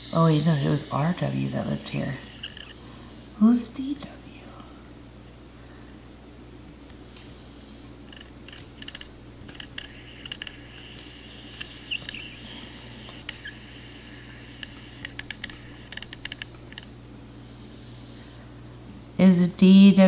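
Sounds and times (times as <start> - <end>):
planchette squeaky scraping: 1.4 - 2.8, 9.5 - 16.0
small ticks: 2.2 - 2.8, 8.1 - 16.9.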